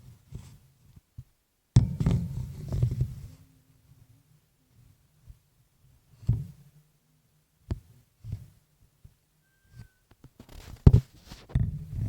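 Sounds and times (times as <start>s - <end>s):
faint whistle-like tone: 9.4s - 10.2s.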